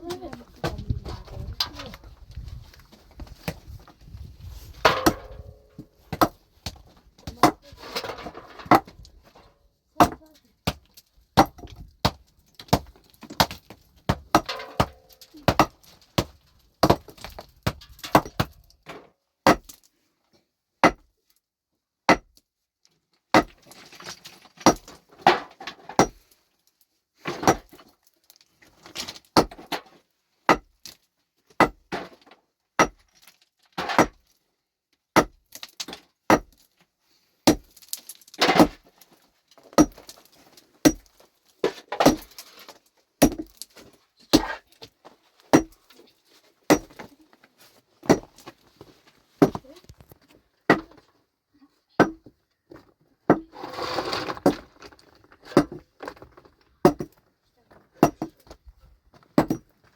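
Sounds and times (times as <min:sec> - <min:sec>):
loose stones scraping and rattling: 0:00.0 - 0:09.6, 0:22.9 - 0:34.4, 0:35.4 - 0:51.2, 0:52.7 - 0:59.9
knocks and clinks on rock: 0:04.8 - 0:19.8, 0:23.3 - 0:26.4, 0:27.2 - 0:34.3, 0:35.2 - 0:36.7, 0:37.4 - 0:46.0, 0:46.7 - 0:47.2, 0:48.0 - 0:48.6, 0:49.4 - 0:51.1, 0:52.0 - 0:53.5, 0:54.2 - 0:59.9.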